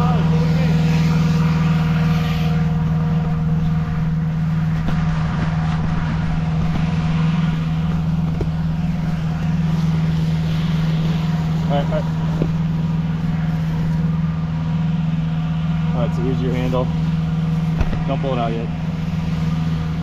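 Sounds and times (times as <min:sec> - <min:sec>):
engine inflator fan humming: 0:00.0 - 0:20.0.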